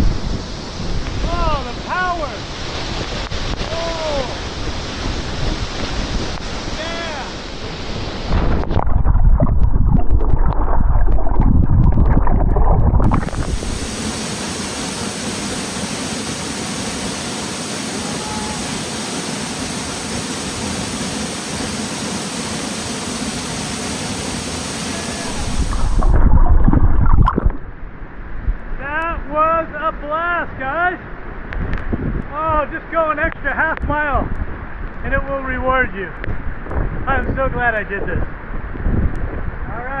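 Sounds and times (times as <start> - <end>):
wind buffeting microphone: 0.0 - 16.5, 24.2 - 29.3, 31.1 - 40.0
waterfall rushing: 0.1 - 8.9, 13.0 - 26.2.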